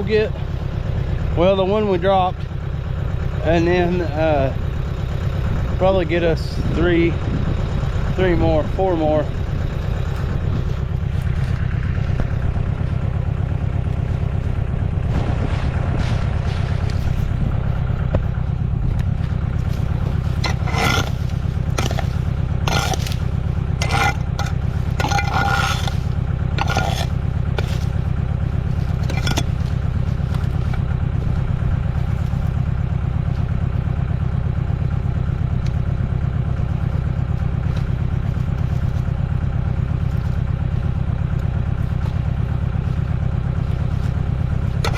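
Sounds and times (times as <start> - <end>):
engine idling: 0.0 - 44.9
hard scrapes and knocks: 10.1 - 12.6, 19.2 - 32.6, 43.8 - 44.9.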